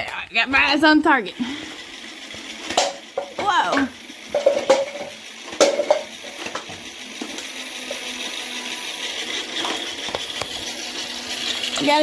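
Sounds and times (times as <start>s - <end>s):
toy dart blaster plastic clacks: 2.3s - 8.0s, 9.1s - 11.9s.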